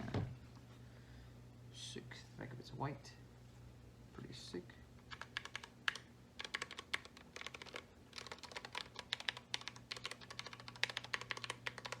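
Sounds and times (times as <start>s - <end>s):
mechanical keyboard typing clicks: 5.1s - 12.0s.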